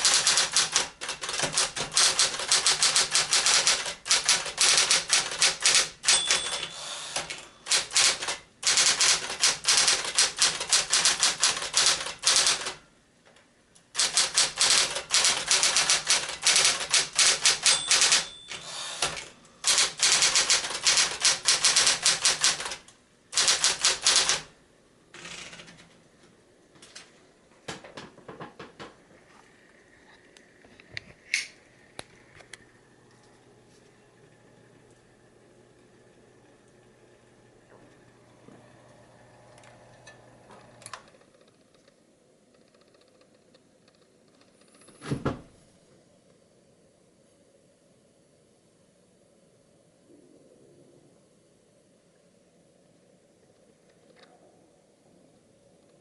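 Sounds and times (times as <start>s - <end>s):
electric typewriter typing: 0.0s - 12.9s, 14.0s - 25.9s.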